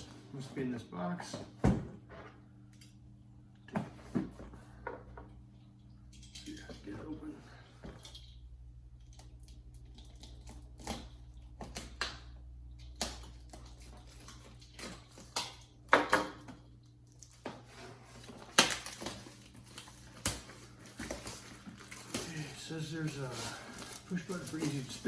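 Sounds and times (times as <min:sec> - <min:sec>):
cardboard packaging handled: 0:17.2 - 0:25.0.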